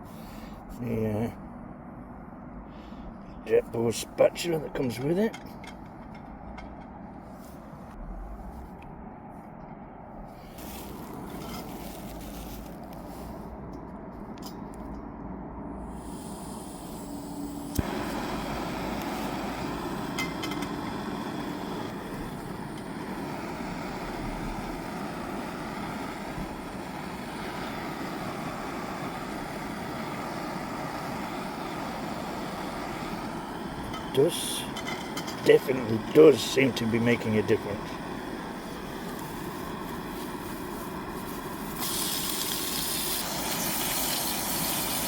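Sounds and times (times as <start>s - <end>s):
gas stove hissing: 10.3s - 13.7s, 15.8s - 45.0s.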